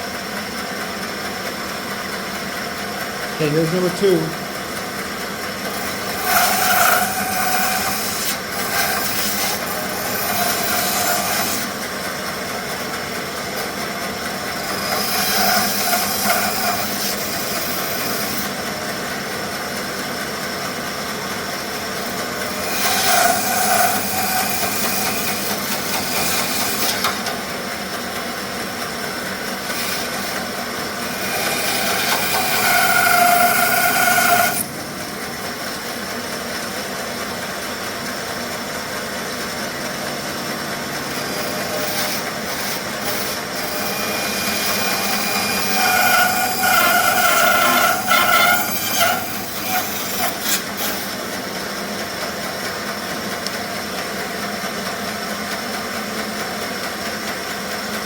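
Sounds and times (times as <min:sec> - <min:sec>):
bandsaw cutting wood: 0:03.4 - 0:04.4, 0:05.1 - 0:36.8, 0:39.4 - 0:51.6.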